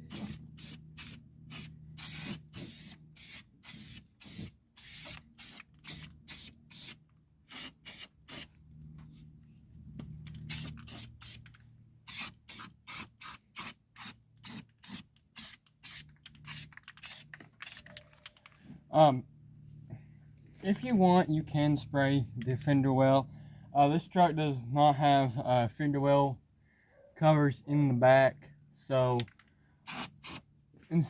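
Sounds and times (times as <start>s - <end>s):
aerosol can spraying in bursts: 0.0s - 8.5s, 10.5s - 11.4s, 12.1s - 17.8s, 29.8s - 30.4s.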